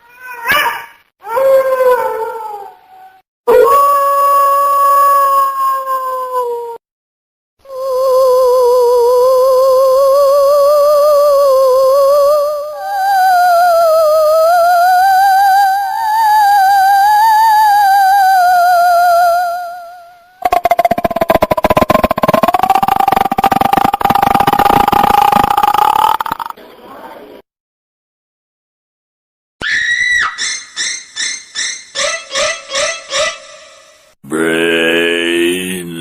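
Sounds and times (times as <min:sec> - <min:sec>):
harsh crackling buzz: 0:20.4 - 0:26.6.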